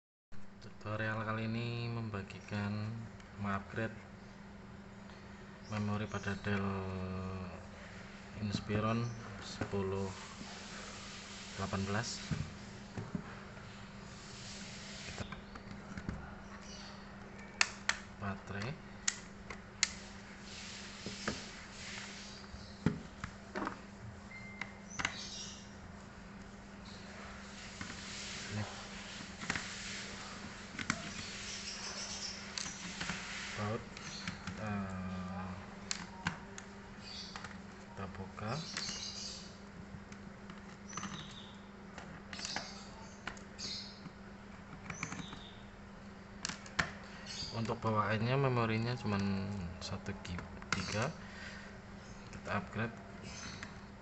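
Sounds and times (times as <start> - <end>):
low electrical hum: 0.4 - 54.0
sliding scrape: 14.1 - 15.3.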